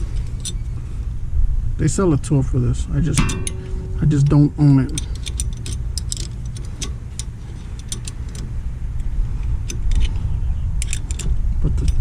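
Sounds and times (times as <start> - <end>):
steady low hum: 0.0 - 12.0
wrench clicking on metal: 3.2 - 10.1, 10.8 - 12.0.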